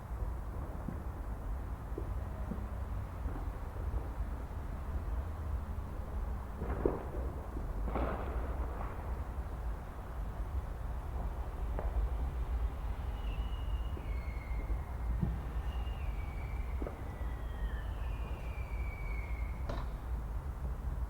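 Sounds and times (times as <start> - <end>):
fireworks pops and cracks: 6.4 - 12.7, 19.6 - 20.2
firework whistling tones: 12.8 - 20.1.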